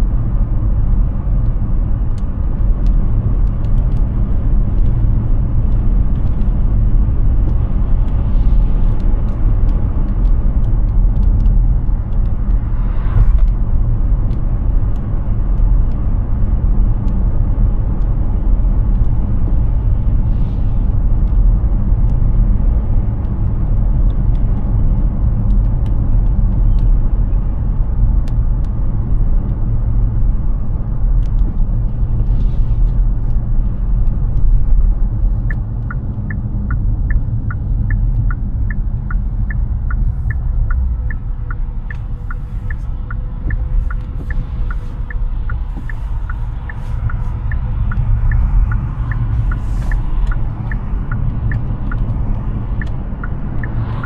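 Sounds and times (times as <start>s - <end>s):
road and tyre rumble: 0.0s - 54.0s
faint ticks: 34.0s - 54.0s.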